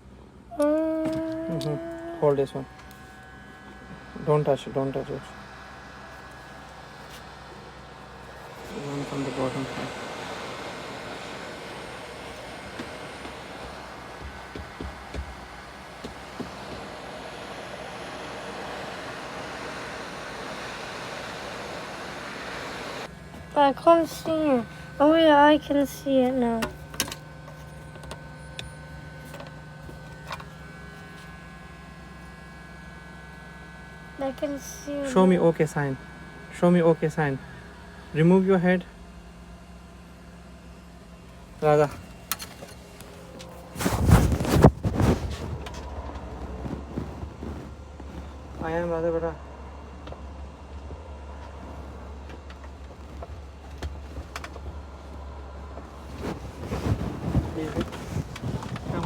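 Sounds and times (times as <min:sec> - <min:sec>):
faint high whine: 0:00.0 - 0:39.6
low electrical hum: 0:00.0 - 0:59.0.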